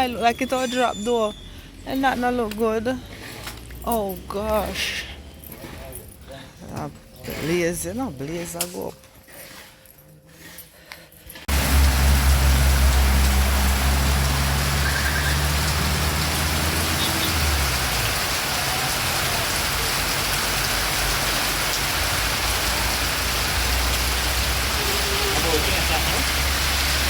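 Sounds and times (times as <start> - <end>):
heavy rain: 11.5 - 27.0.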